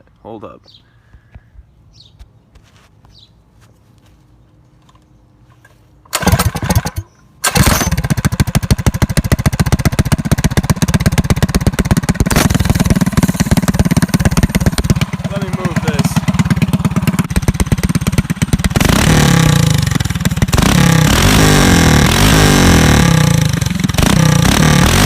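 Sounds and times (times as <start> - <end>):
single-cylinder engine running: 6.1 - 25.0.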